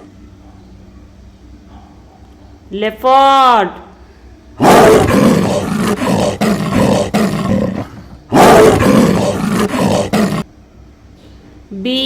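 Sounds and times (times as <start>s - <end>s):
leopard roaring: 4.6s - 10.5s.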